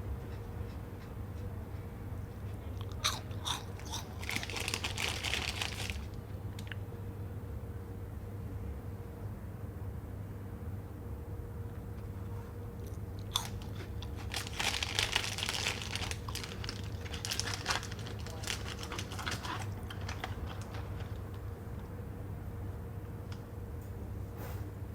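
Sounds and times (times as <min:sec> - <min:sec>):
steady low hum: 0:00.0 - 0:24.9
crunchy snack being chewed: 0:02.5 - 0:06.8, 0:12.8 - 0:21.4.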